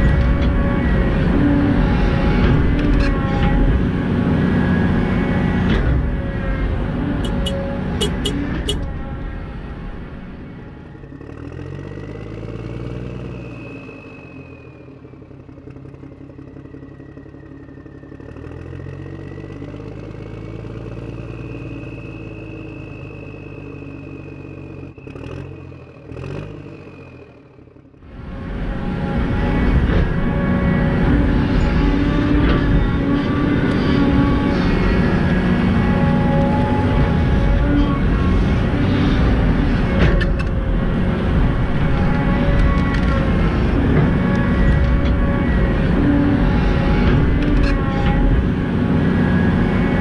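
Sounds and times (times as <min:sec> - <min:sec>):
simulated engine rumble: 0:00.0 - 0:12.5, 0:27.3 - 0:50.0.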